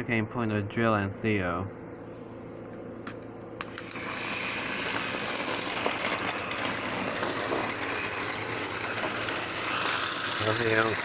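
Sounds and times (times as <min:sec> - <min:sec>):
toy train motors rattling: 0:03.6 - 0:11.0.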